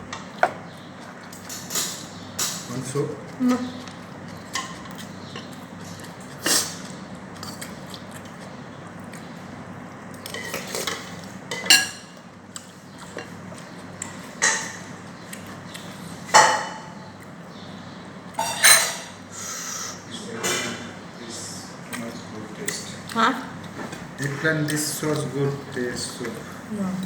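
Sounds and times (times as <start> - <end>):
cutlery clinking and scraping on a plate: 10.2 - 12.2, 18.4 - 19.2.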